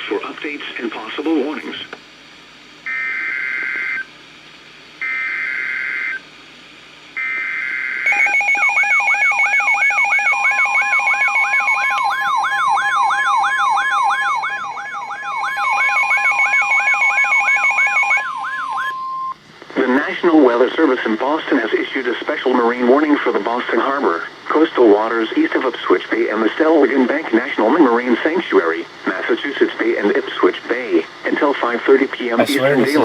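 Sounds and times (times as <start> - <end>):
long steady warning tone: 2.8 - 4.1, 5.0 - 6.3, 7.1 - 19.4, 32.4 - 33.0
warbling alert alarm chirps: 12.1 - 18.9.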